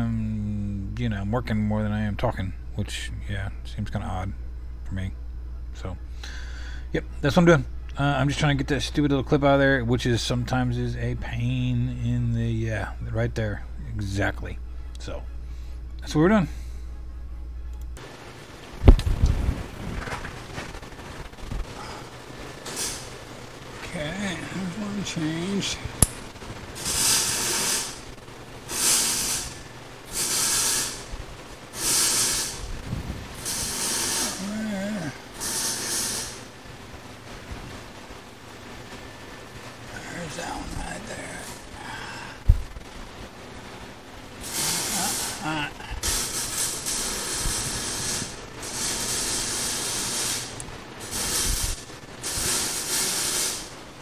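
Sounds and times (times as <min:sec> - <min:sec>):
short bursts of hissing: 0:22.6 - 0:23.1, 0:26.8 - 0:28.0, 0:28.7 - 0:31.1, 0:31.8 - 0:32.7, 0:33.4 - 0:34.4, 0:35.4 - 0:36.5, 0:44.4 - 0:53.7.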